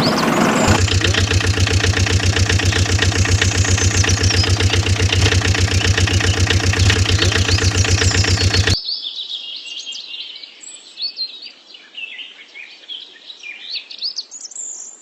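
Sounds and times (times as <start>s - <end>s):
birds chirping: 0.0s - 8.8s
engine idling: 0.0s - 8.8s.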